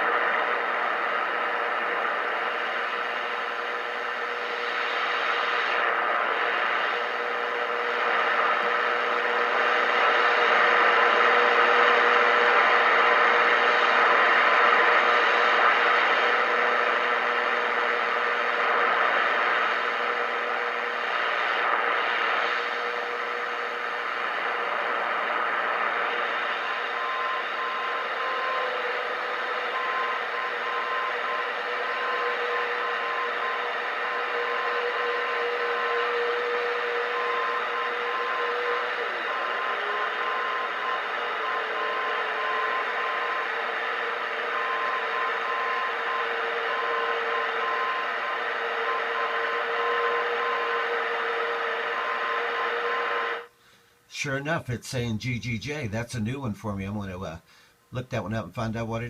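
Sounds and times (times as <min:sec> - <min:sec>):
radio static hiss: 0:00.0 - 0:59.0
low steady whistle: 0:00.2 - 0:54.0.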